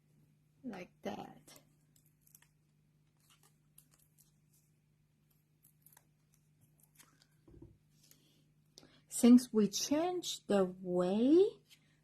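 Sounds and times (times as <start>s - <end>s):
paper card pieces rustling: 1.9s - 4.7s, 5.3s - 8.3s.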